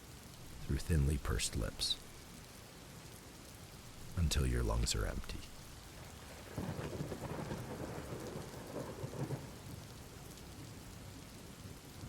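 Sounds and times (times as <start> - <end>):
steady rain falling: 0.0 - 12.0
low roll of thunder: 6.3 - 9.6.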